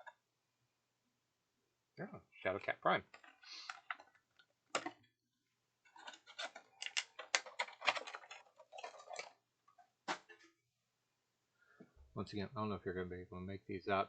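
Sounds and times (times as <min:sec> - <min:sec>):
clicks and clatter of small items: 0:03.0 - 0:05.1, 0:05.8 - 0:10.5.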